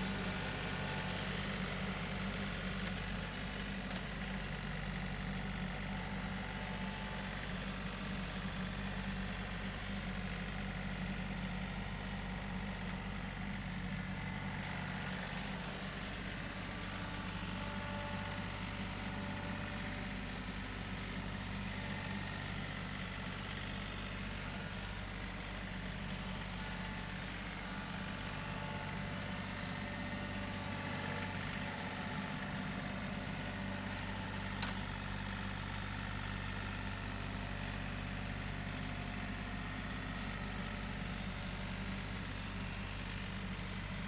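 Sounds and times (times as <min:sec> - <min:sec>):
tractor engine running: 0:00.0 - 0:44.0.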